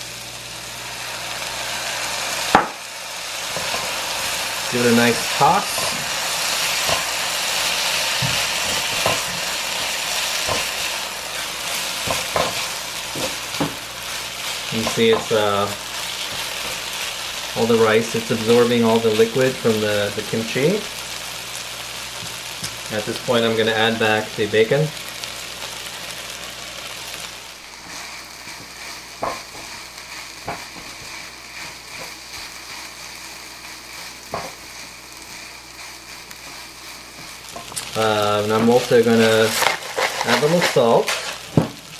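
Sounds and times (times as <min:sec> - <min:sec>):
food sizzling in a pan: 0:00.0 - 0:41.9.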